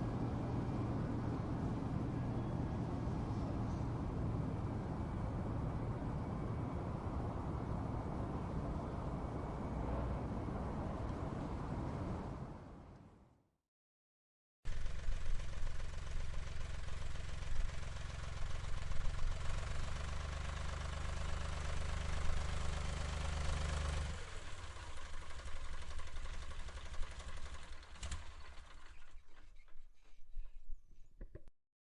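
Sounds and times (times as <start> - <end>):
tractor engine idling: 14.7 - 29.7.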